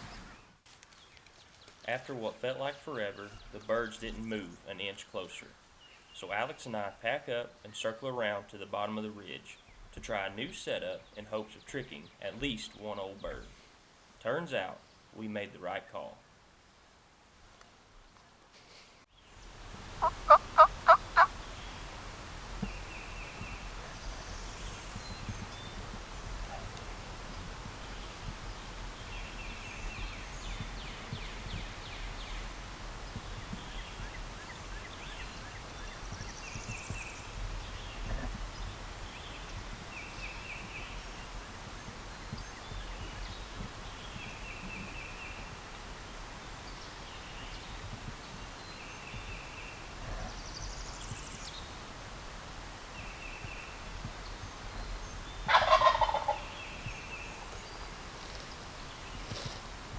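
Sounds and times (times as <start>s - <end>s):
turkey gobbling: 20.0s - 21.4s, 55.5s - 56.6s
trilled bird calls: 20.0s - 21.8s, 55.4s - 58.0s.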